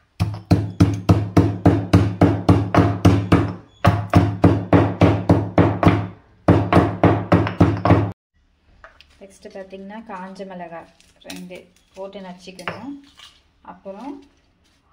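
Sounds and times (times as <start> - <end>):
pestle pounding in a mortar: 0.2 - 8.2.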